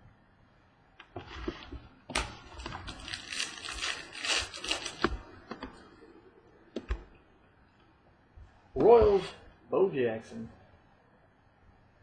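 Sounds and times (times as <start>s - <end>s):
plastic wrapping crinkling: 1.3s - 5.3s.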